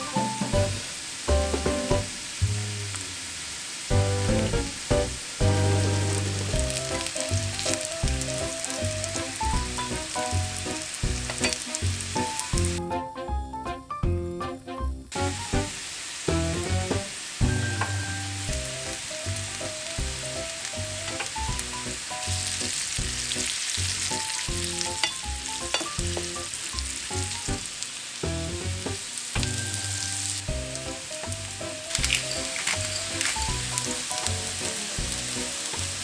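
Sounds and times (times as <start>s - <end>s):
bouncy background music: 0.0s - 2.2s, 3.9s - 36.0s
potatoes sizzling in oil: 0.0s - 36.0s
stirring clicks: 30.8s - 35.9s.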